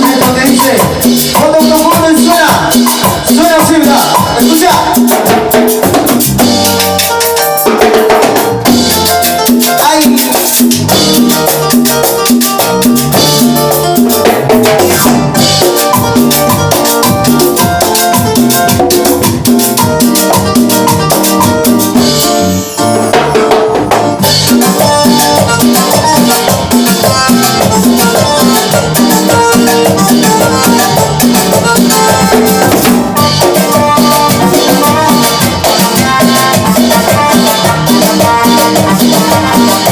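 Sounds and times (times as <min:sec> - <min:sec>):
latin percussion: 0:00.0 - 0:39.9
salsa band music: 0:00.0 - 0:39.9.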